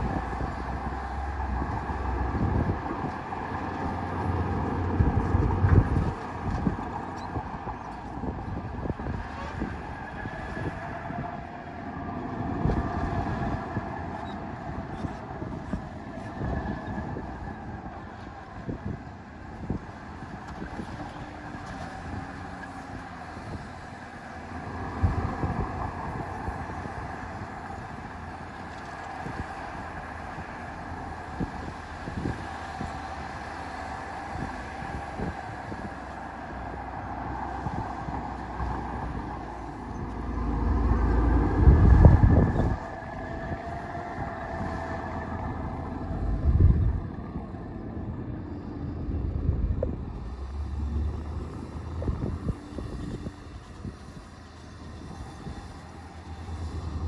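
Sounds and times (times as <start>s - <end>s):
low rumble: 45.5s - 52.4s.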